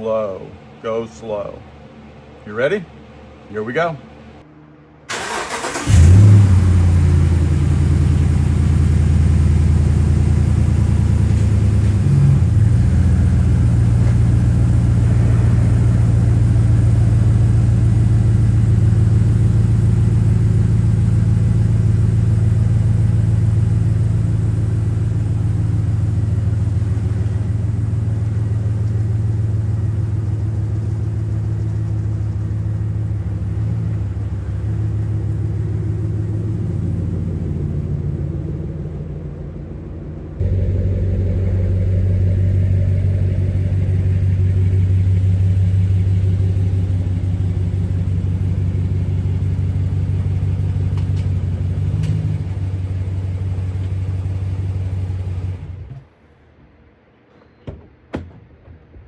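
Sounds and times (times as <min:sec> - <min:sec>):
pickup truck engine droning: 0:05.1 - 0:56.1.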